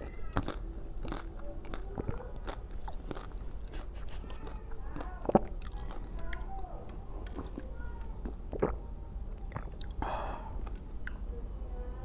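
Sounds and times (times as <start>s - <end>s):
chewing and mouth sounds: 0.0s - 10.0s.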